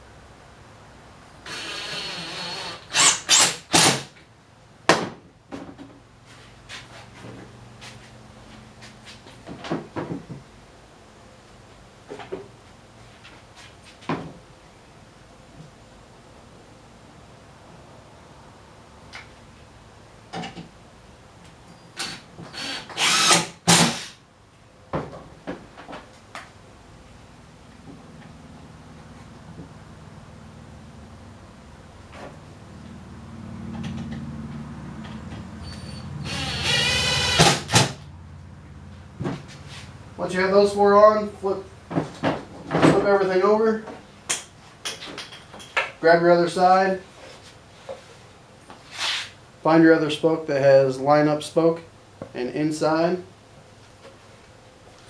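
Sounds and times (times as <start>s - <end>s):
power drill driving screw into wood: 1.4s - 4.2s, 22.0s - 24.2s, 35.7s - 38.0s.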